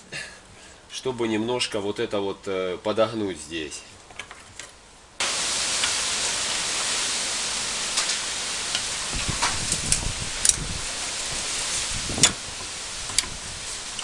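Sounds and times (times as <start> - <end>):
loud steady hiss: 5.0 - 14.0.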